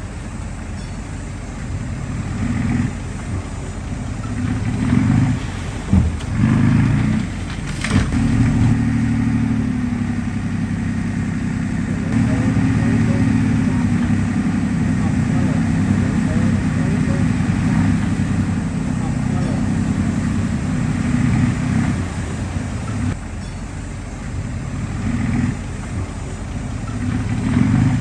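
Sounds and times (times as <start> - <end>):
heavy diesel engine working: 0.0 - 28.0.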